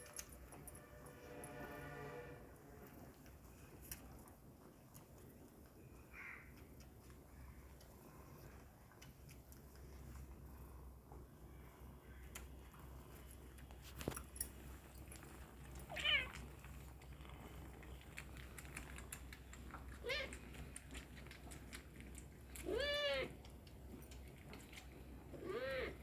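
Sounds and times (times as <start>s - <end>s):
faint small clicks: 6.4s - 10.3s, 12.2s - 12.9s, 13.5s - 25.0s.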